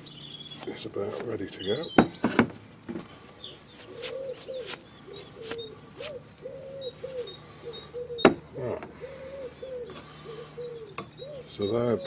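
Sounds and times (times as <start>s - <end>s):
high bird chirps: 3.1s - 12.0s
pigeon cooing: 3.8s - 12.0s.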